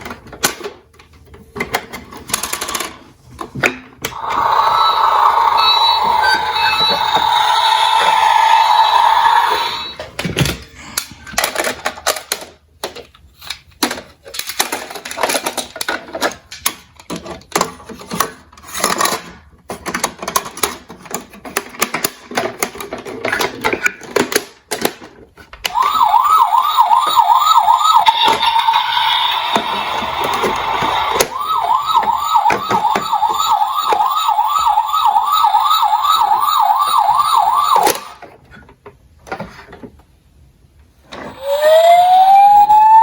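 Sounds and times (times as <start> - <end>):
electronic siren yelping: 4.1 - 10.0, 25.7 - 38.2, 41.3 - 43.0
steady siren tone: 4.1 - 10.0, 25.7 - 38.2, 41.3 - 43.0.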